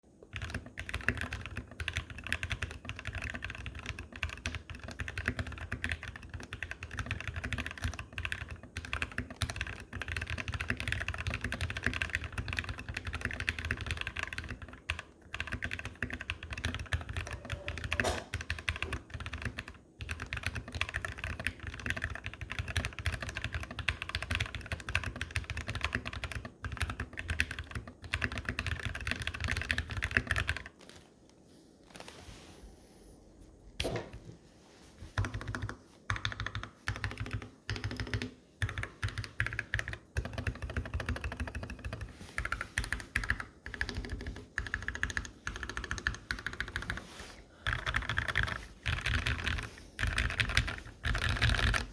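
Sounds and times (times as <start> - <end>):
fast typing on mechanical keyboard: 0.3 - 30.8, 35.2 - 51.9.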